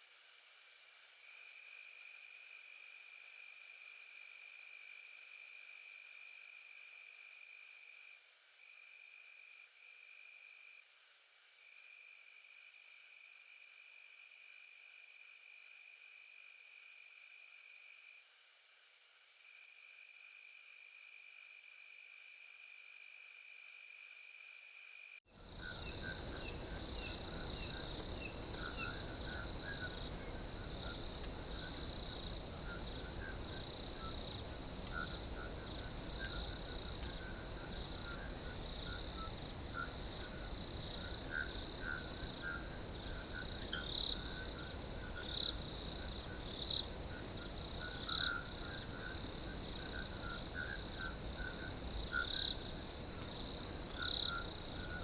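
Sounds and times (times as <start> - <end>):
lower cricket chirps: 0.0 - 55.0
crickets trilling: 25.3 - 55.0
faint background rumble: 25.4 - 55.0.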